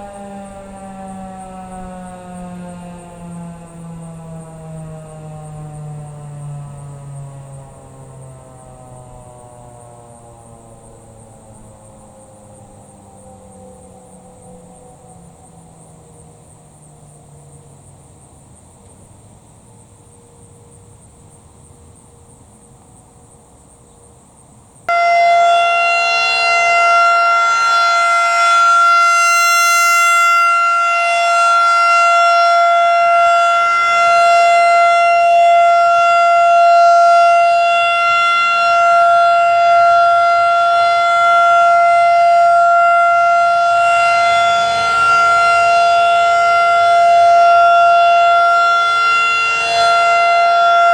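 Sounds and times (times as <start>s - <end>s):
rotating warning siren: 0.0s - 19.2s, 24.8s - 50.9s.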